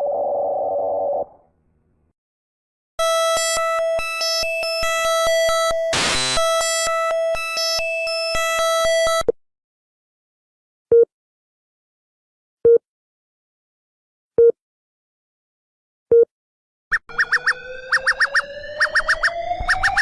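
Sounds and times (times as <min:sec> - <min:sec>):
harsh buzzing alarm tone: 0:03.0 - 0:09.2.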